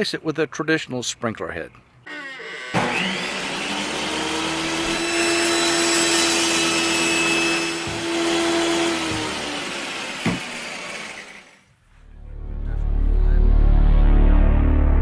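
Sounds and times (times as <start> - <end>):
electric motor humming: 2.1 - 11.6.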